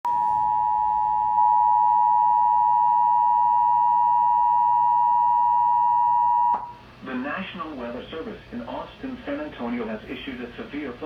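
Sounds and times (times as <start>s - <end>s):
loud two-tone alarm: 0.1s - 6.7s.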